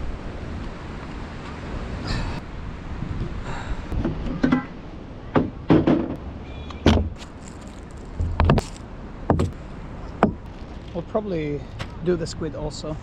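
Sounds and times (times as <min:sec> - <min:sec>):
knocks and thumps of gear: 0:06.9 - 0:11.0.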